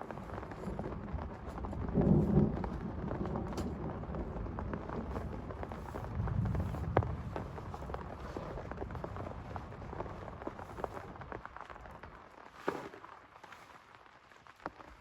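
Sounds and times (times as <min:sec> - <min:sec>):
thunder rumble: 0:00.0 - 0:11.9
heavy rain: 0:00.0 - 0:12.4
raindrops striking close by: 0:00.0 - 0:15.0.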